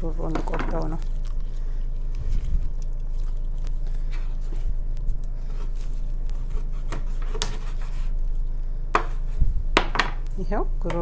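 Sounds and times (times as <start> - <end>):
steady low hum: 0.0 - 11.0
knife cutting and scraping meat: 0.2 - 8.4.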